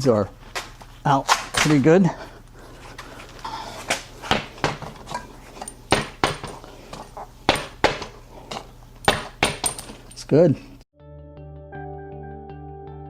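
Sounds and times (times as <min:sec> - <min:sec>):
metal clicks and clinks: 0:09.0 - 0:10.4.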